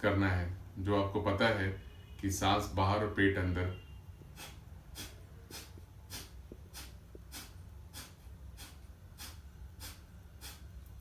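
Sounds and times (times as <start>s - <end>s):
forceful exhalations through nose: 4.3s - 10.8s.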